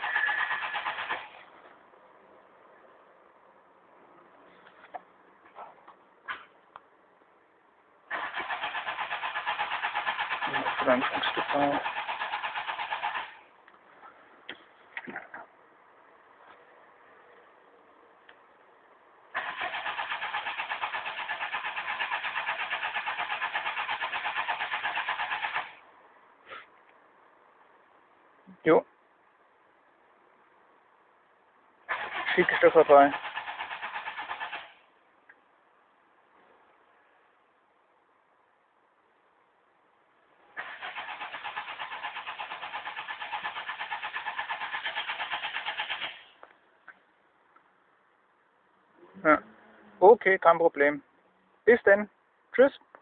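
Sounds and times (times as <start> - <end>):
starter motor cranking engine: 0.0 - 1.4, 8.1 - 13.4, 19.3 - 25.8, 31.9 - 34.8, 40.6 - 46.3.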